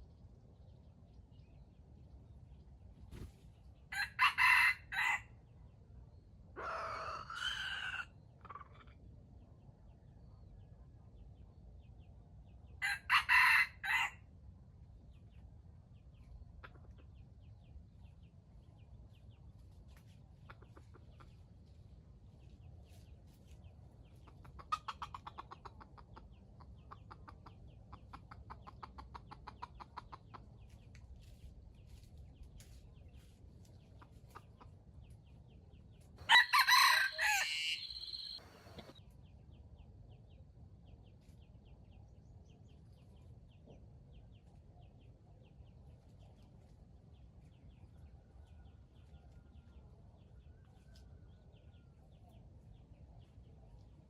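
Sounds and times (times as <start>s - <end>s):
rooster crowing: 3.9s - 5.3s, 12.8s - 14.1s, 36.2s - 38.9s
chicken clucking: 6.6s - 9.0s, 16.5s - 17.2s, 19.9s - 21.8s, 23.4s - 32.1s, 33.0s - 35.4s, 36.2s - 39.0s.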